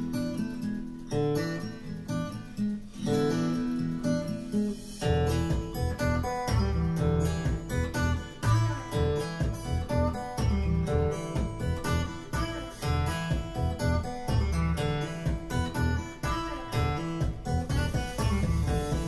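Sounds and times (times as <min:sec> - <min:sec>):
acoustic guitar music: 0:00.0 - 0:19.0
strong bass line: 0:05.0 - 0:19.0.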